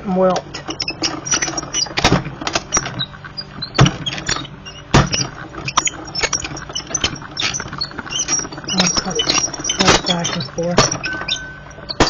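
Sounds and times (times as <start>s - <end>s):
die-cutting machine being cranked: 0.3s - 12.0s
squeaks and rapid clicks: 0.3s - 12.0s
heavy knocks: 3.7s - 4.3s, 4.9s - 5.4s.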